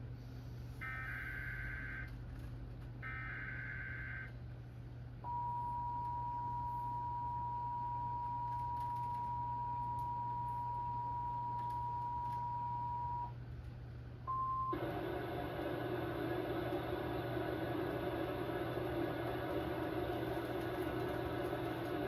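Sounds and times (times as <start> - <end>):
two-tone alarm: 0.8 - 2.2, 3.0 - 4.4, 5.2 - 13.3
low hum: 14.2 - 22.0.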